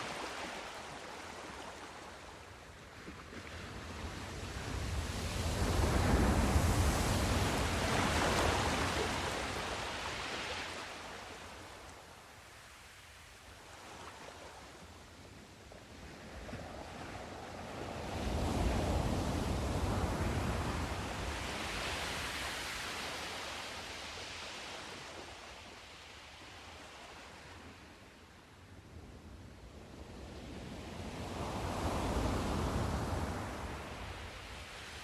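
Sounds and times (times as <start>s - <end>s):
hissing wash of surf: 4.2s - 11.0s
sea wave breaking: 5.5s - 11.1s.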